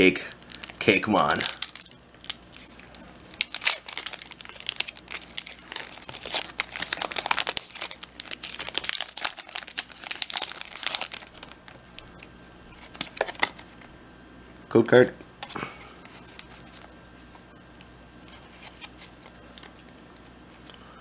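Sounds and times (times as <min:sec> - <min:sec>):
foil wrapper tearing and crinkling: 0:00.0 - 0:11.8, 0:12.8 - 0:13.8, 0:18.4 - 0:20.2.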